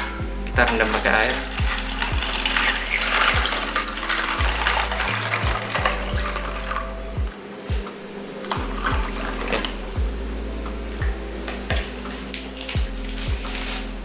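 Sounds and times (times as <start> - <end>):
background music: 0.0 - 14.0
water splashing into keycaps: 0.6 - 7.1, 8.4 - 10.0.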